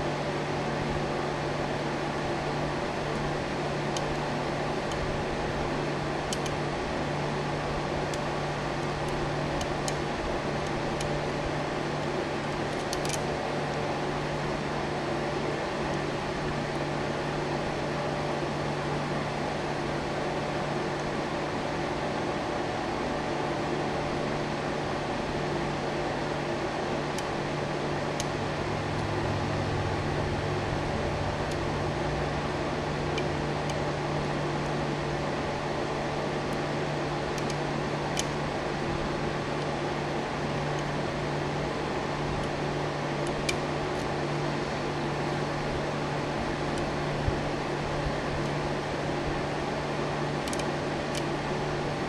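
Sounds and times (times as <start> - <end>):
fan-like hum and hiss: 0.0 - 52.0.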